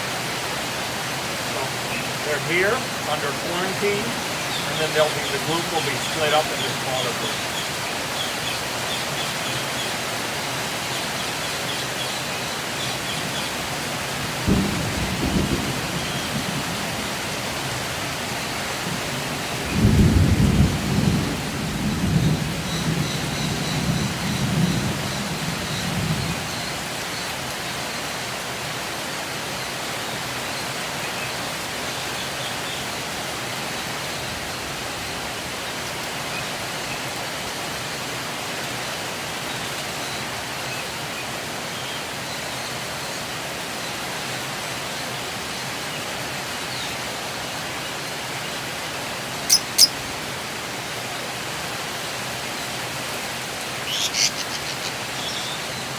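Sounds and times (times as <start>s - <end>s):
steady noisy hiss: 0.0s - 55.9s
lovebirds chirping: 1.5s - 13.7s, 49.4s - 50.0s, 53.8s - 55.9s.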